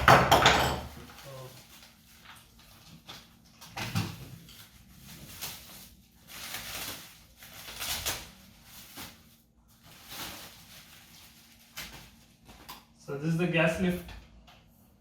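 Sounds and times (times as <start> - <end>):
packaging rustling: 1.0 - 12.9.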